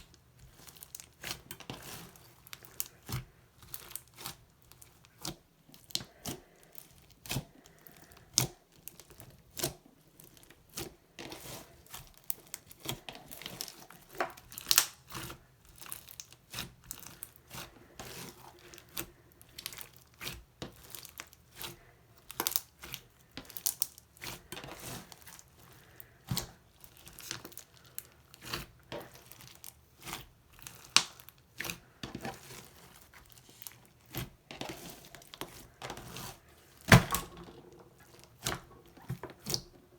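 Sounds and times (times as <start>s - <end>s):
slime popping and crackling: 12.1s - 17.3s.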